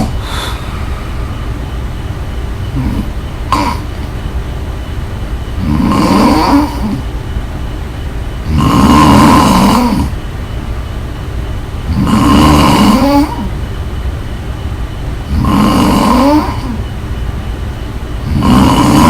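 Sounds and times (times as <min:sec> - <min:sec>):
breathing noise: 0:00.0 - 0:04.2
person snoring loudly: 0:02.7 - 0:04.1, 0:05.6 - 0:07.1, 0:08.4 - 0:10.2, 0:11.9 - 0:13.5, 0:15.3 - 0:16.9, 0:18.2 - 0:19.0.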